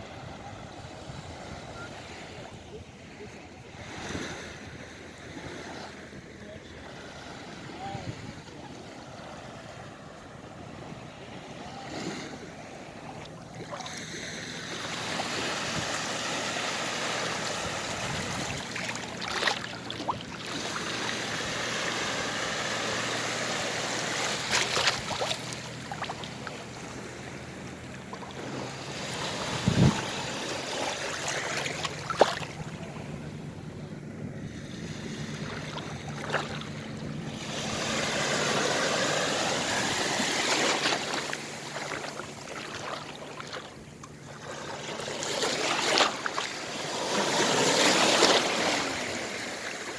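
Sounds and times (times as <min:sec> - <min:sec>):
sea waves washing onto shore: 0:06.6 - 0:33.3, 0:34.6 - 0:49.9.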